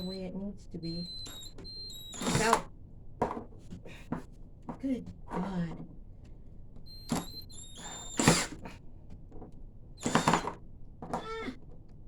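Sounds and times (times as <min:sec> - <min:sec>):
drill motor whining: 0:00.0 - 0:02.7, 0:06.8 - 0:08.7, 0:10.0 - 0:10.6, 0:11.2 - 0:11.7
loud harsh bursts: 0:01.0 - 0:02.6.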